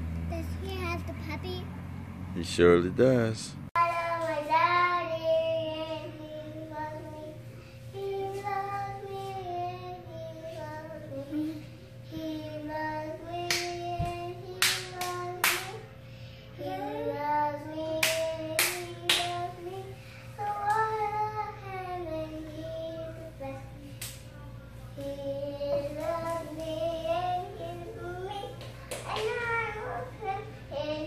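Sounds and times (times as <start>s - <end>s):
steady low hum: 0.0s - 31.0s
child singing: 3.8s - 15.8s, 16.6s - 23.8s, 24.8s - 31.0s
handclaps: 13.4s - 15.8s, 18.0s - 19.4s, 28.5s - 29.4s.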